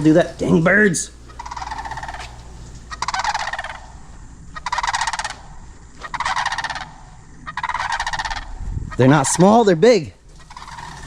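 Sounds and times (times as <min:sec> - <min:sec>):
turkeys gobbling: 0:00.0 - 0:11.0.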